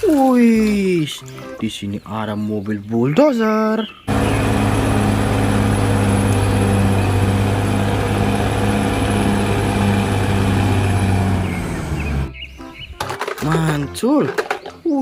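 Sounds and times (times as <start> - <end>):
bulldozer diesel engine running: 4.1 - 12.4.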